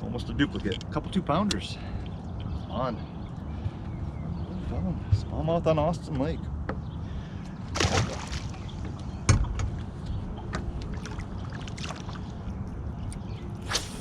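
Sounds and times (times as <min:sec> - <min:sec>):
knocks in a small boat: 0:09.3 - 0:09.8.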